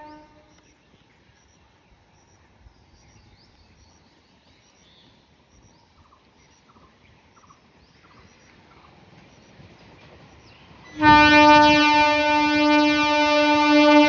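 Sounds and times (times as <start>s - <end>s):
insects: 0.0s - 11.0s.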